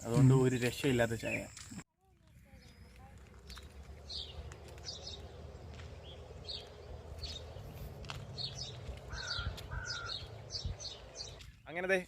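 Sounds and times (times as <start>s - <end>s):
small birds chirping: 0.1s - 12.0s
low bird call: 8.3s - 11.4s.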